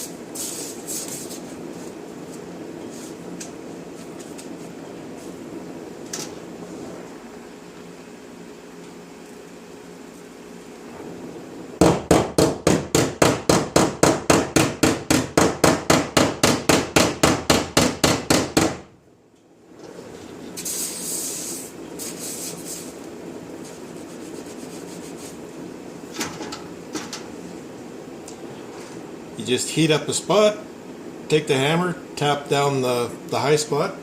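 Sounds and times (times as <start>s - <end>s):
short hiss: 0.0s - 1.4s, 20.6s - 23.0s.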